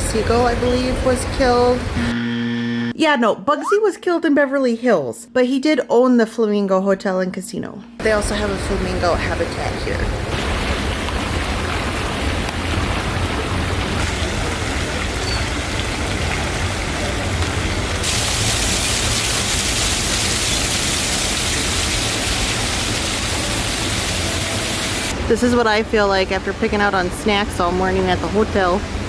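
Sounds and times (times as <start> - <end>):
waterfall rushing: 10.3 - 25.2.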